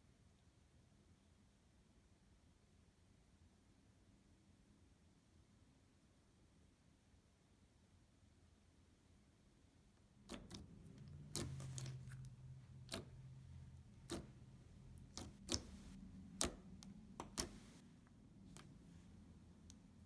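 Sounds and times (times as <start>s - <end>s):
low hum of handling: 10.0s - 20.0s.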